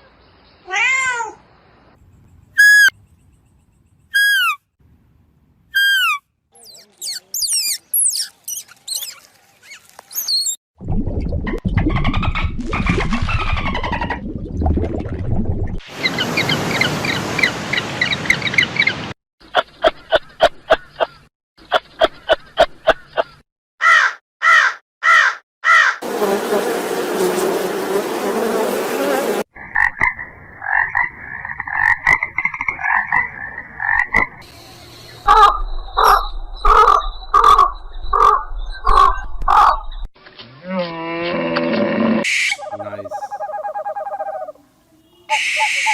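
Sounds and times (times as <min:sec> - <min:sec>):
frog croaking: 0:29.6 - 0:34.4, 0:35.2 - 0:39.8.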